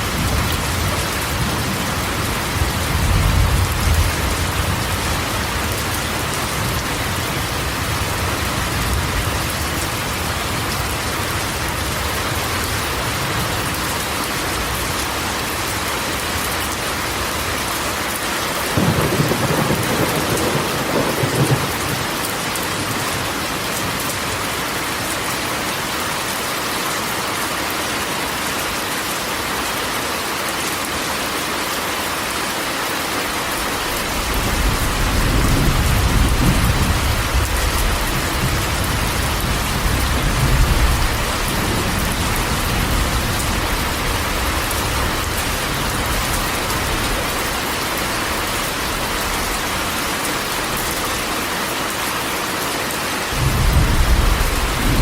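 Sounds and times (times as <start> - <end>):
rain on a metal roof: 0.0 - 55.0
thunder rumble: 18.7 - 23.0, 34.0 - 47.0, 53.3 - 55.0.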